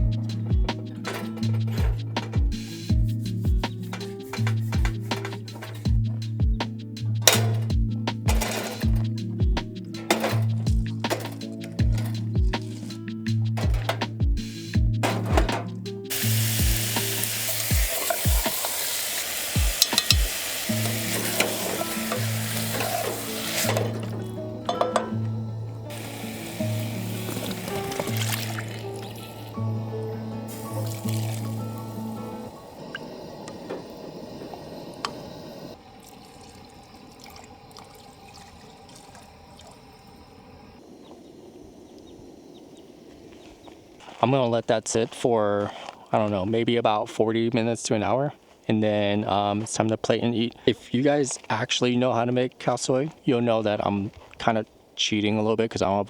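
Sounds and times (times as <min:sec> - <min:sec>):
food sizzling in a hot pan: 0:16.1 - 0:23.7, 0:25.9 - 0:32.6
utensil clinking while stirring: 0:16.1 - 0:25.2
soup bubbling in a pot: 0:25.9 - 0:29.6, 0:30.2 - 0:33.0, 0:35.7 - 0:40.8.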